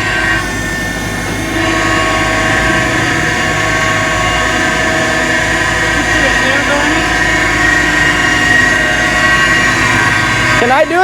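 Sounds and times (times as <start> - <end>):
truck engine and hydraulics running: 0.0 - 11.0.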